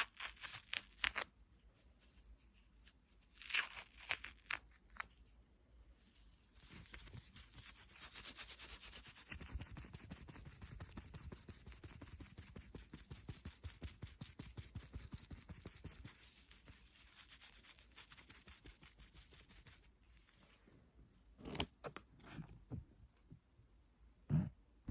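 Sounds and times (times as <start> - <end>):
fast scratching strokes: 6.1 - 20.4.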